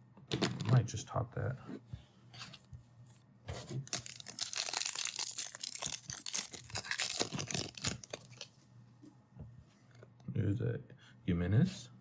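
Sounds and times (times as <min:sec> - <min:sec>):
card pack wrapper tearing and crinkling: 0:03.6 - 0:08.5.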